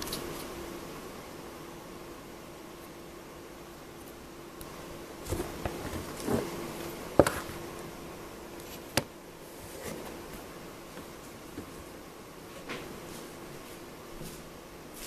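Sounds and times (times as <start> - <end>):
air conditioner humming: 0.0 - 15.0.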